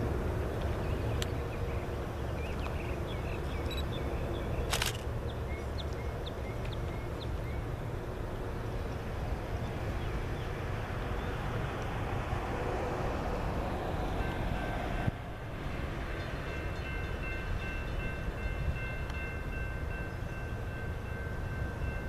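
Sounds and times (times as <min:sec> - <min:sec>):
distant diesel locomotives rumbling: 0:00.0 - 0:22.0
small birds chirping: 0:00.6 - 0:07.7.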